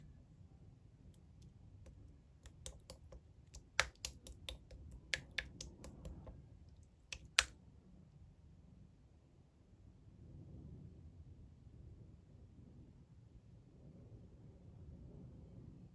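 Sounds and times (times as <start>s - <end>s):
slime squeezed by hand popping: 2.5s - 6.3s.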